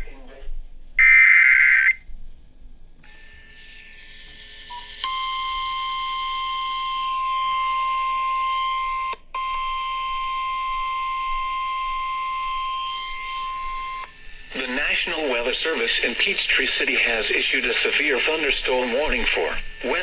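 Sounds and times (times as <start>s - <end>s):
electronic warning alarm tone: 1.0s - 2.0s, 3.1s - 15.0s.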